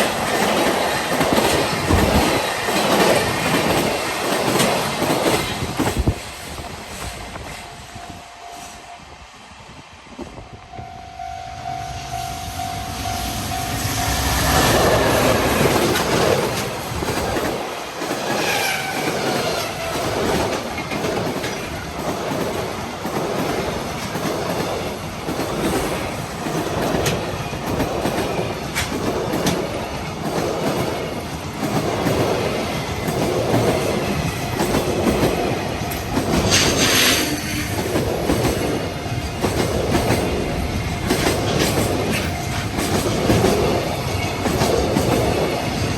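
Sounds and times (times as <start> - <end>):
train wheels clattering: 0.0 - 7.6, 13.9 - 45.9
crossing warning bell: 7.7 - 9.2, 10.4 - 15.9, 33.6 - 37.7, 38.4 - 45.2.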